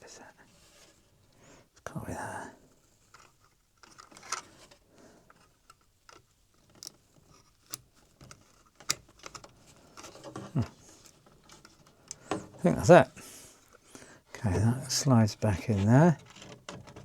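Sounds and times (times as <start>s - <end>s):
plastic parts clicking: 3.0s - 12.6s, 16.2s - 17.0s.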